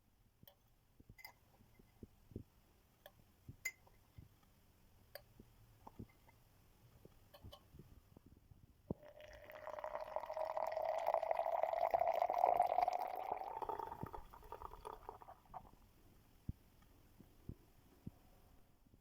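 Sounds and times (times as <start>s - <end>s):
coffee pouring into cup: 8.9s - 15.8s.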